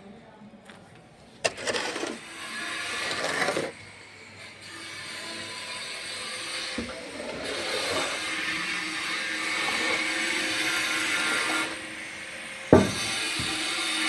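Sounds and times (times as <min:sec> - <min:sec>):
machine humming and hissing: 0:02.0 - 0:14.0
sharp loud knock: 0:12.7 - 0:13.6
thud: 0:12.7 - 0:13.6.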